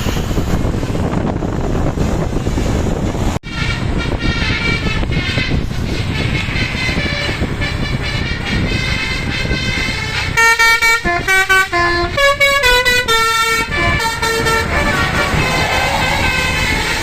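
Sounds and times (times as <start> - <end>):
bus engine and road noise: 0.0 - 17.0
musical bus horn tune: 3.4 - 17.0.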